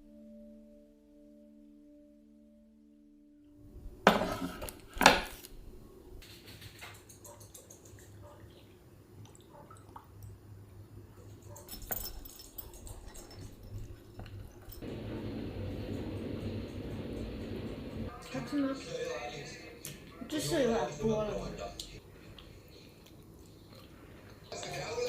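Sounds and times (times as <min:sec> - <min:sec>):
pan clanking: 0:04.0 - 0:05.4
dishes and utensils clinking: 0:04.1 - 0:05.4, 0:11.4 - 0:15.1.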